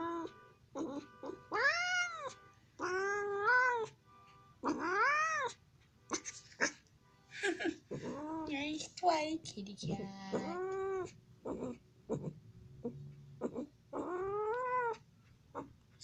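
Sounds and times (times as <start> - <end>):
cat yowling: 0.0 - 4.0, 4.6 - 6.8, 7.9 - 8.5, 10.1 - 15.0.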